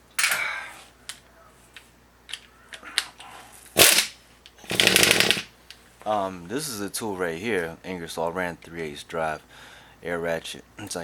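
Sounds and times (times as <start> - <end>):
air ratchet rattling buzz: 3.8 - 5.5.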